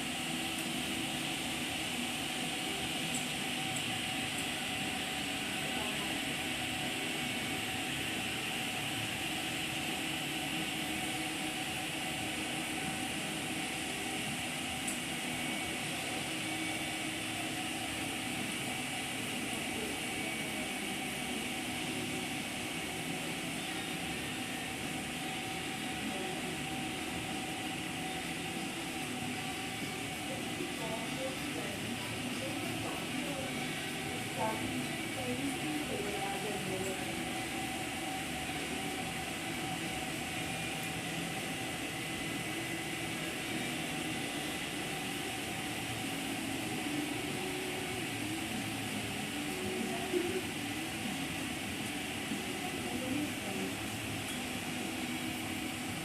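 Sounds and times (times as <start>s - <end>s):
steady mechanical hum: 0.0s - 56.0s.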